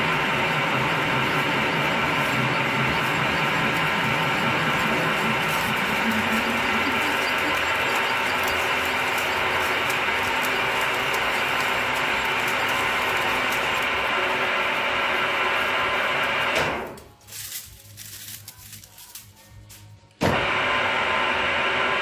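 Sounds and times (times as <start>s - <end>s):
milling machine grinding: 0.0s - 16.6s.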